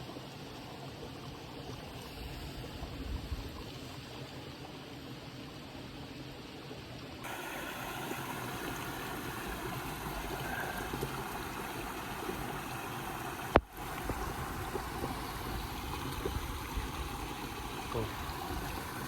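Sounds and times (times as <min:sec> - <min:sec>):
stream water rushing: 0:03.8 - 0:19.0.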